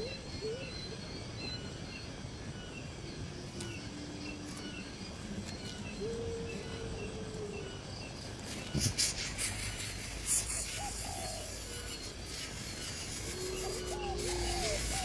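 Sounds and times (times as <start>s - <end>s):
low whistled calls: 8.6s - 15.0s.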